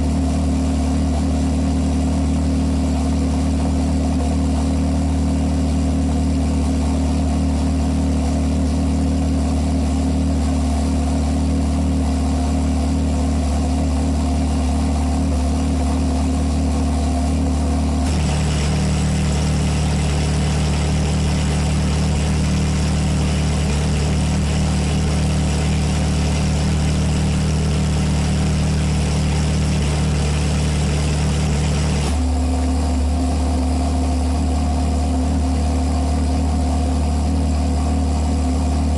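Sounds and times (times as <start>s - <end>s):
car engine idling: 5.6s - 33.3s.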